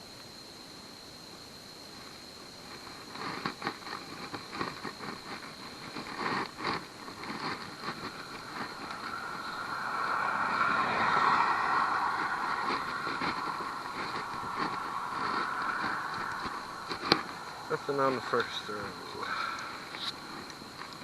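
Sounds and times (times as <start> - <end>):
high-pitched insect drone: 0.0 - 21.0
car passing: 7.4 - 21.0.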